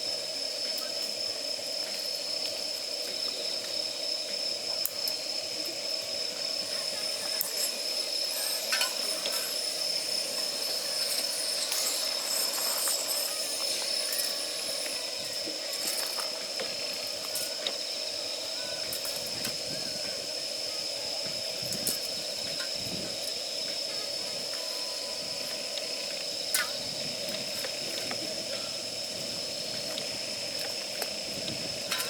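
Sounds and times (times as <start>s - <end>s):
gas burner hissing: 0.0s - 32.0s
wet wood sizzling and crackling: 4.4s - 23.9s, 25.3s - 32.0s.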